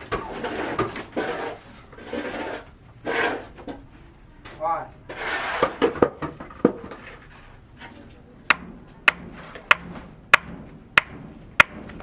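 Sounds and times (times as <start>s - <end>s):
sharp knocks: 8.5s - 12.0s.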